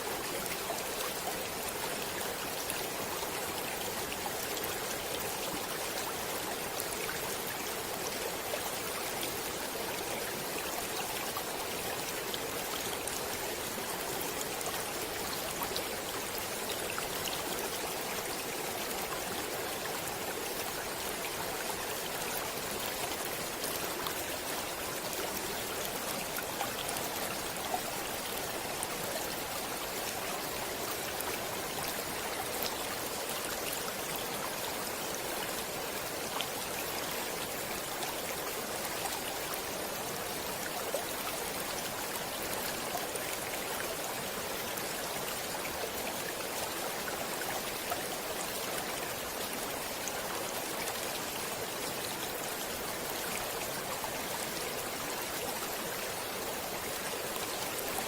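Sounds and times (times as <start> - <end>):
stream water babbling: 0.0 - 58.0.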